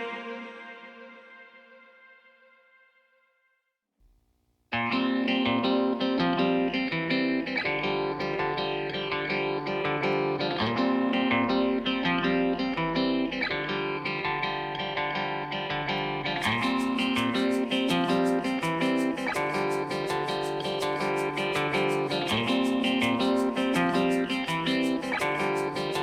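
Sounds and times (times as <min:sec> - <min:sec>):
quick high ticking beat: 0:16.4 - 0:26.0.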